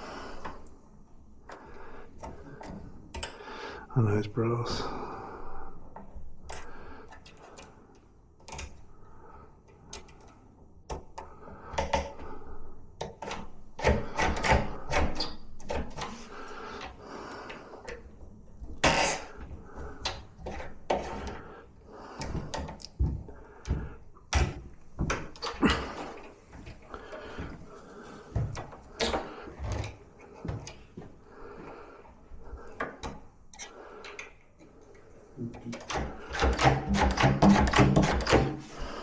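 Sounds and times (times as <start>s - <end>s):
metal door latch clicking and rattling: 35.6s - 38.6s.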